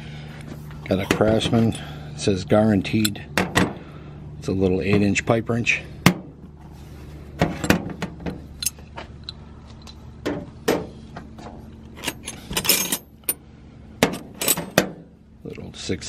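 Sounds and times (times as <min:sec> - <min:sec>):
metal jangle: 0:12.0 - 0:13.4.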